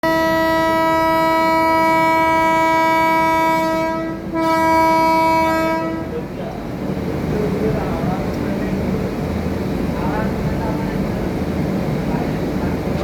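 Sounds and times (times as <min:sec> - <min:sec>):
train horn blast: 0:00.0 - 0:06.3
moving train rumble: 0:00.0 - 0:13.0.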